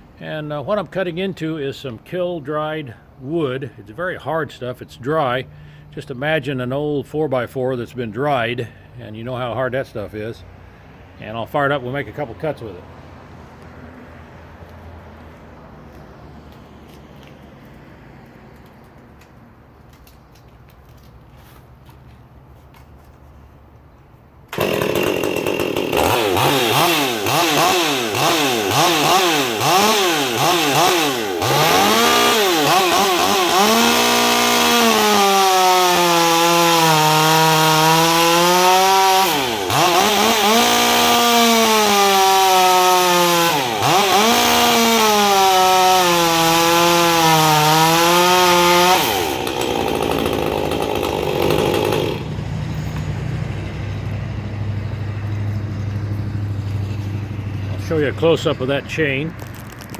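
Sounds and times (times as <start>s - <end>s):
chainsaw cutting wood: 24.5s - 59.9s.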